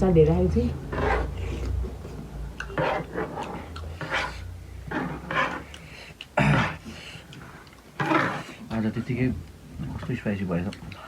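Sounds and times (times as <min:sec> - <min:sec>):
chewing close to microphone: 0:02.6 - 0:08.7.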